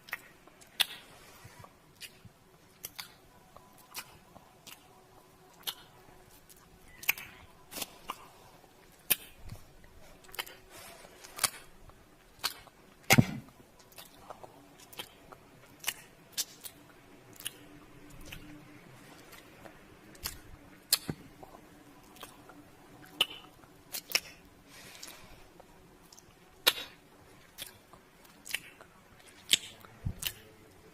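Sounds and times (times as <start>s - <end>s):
wet lip smacks: 0.0s - 1.1s, 5.5s - 5.9s, 10.2s - 10.6s, 12.4s - 13.3s, 22.1s - 24.4s, 26.0s - 30.4s.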